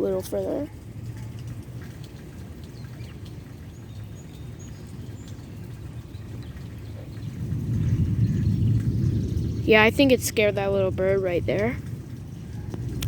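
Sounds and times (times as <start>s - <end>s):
rolling thunder: 6.7s - 13.0s.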